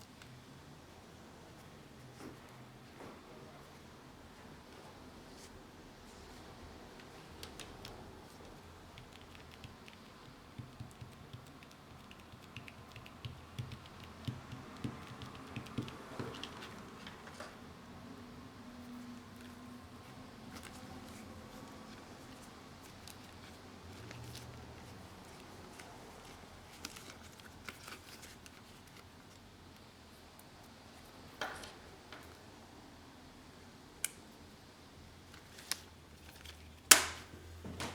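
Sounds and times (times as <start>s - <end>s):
small clicks and taps: 8.9s - 17.5s.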